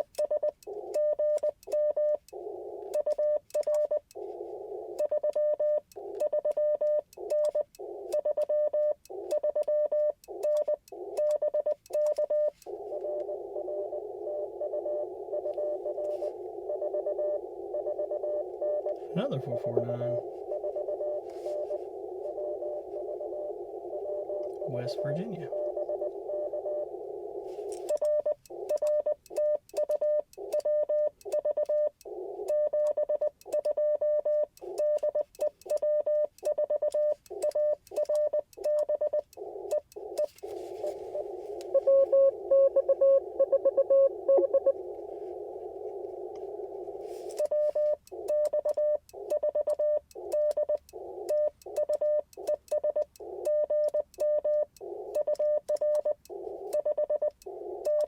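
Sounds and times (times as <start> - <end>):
morse code beeps: 0.0 - 58.0
radio receiver hiss: 12.5 - 17.8, 18.4 - 28.7, 39.3 - 48.3.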